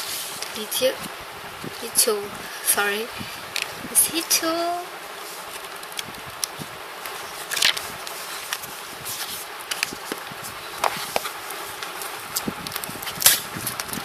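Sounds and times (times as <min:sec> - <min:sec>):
packaging rustling and clicking: 0:05.5 - 0:14.0.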